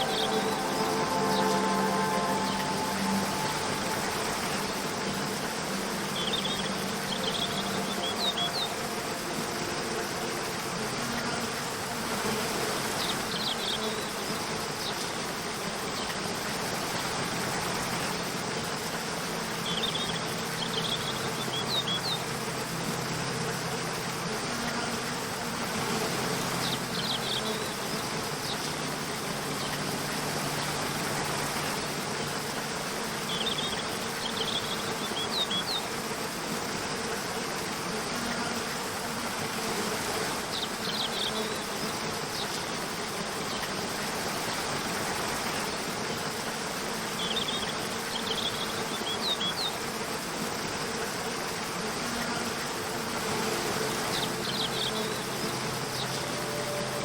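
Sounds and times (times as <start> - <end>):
high bird chirps: 0.0 - 8.7
waterfall rushing: 0.0 - 13.0, 14.6 - 33.2, 53.0 - 57.0
soft low background music: 0.0 - 13.2, 16.5 - 34.0, 52.8 - 57.0.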